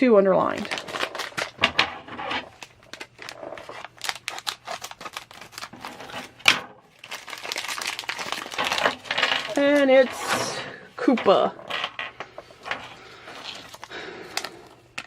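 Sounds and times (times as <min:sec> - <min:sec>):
plastic packet crinkling and tearing: 0:00.4 - 0:10.3, 0:13.0 - 0:14.7
sharp plastic crack: 0:00.5 - 0:10.4.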